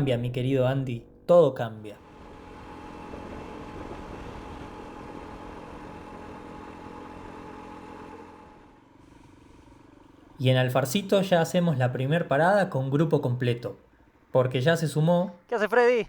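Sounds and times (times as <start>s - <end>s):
motorcycle engine running: 0.0s - 12.2s
road noise: 0.0s - 16.0s.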